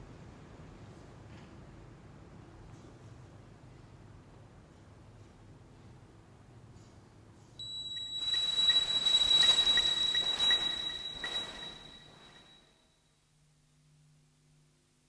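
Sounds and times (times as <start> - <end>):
soft regular pings: 7.6 - 12.6
synthesizer drone: 7.7 - 12.4.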